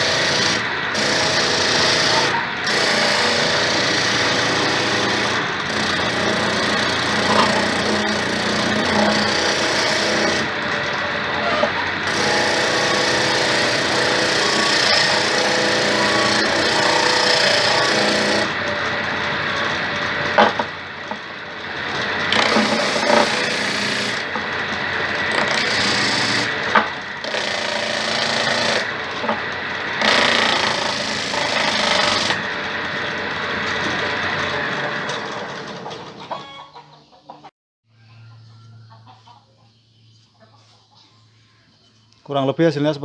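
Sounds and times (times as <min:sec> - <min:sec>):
wood rasping on sander: 0:00.0 - 0:18.6, 0:22.2 - 0:24.4, 0:25.2 - 0:29.0, 0:30.0 - 0:32.5
disc sander motor running: 0:00.0 - 0:35.0.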